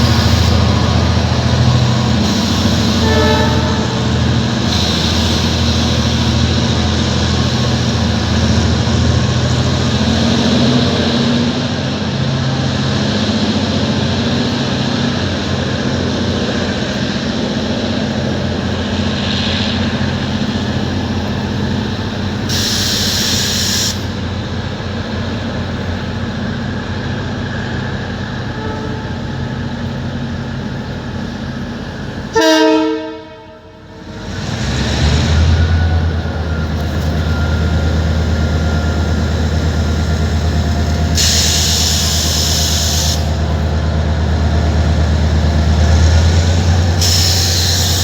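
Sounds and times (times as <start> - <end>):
train rumbling: 0.0 - 48.0
train horn blast: 2.2 - 6.2, 28.6 - 29.3, 32.3 - 34.1
short hiss: 22.5 - 24.1, 47.0 - 48.0.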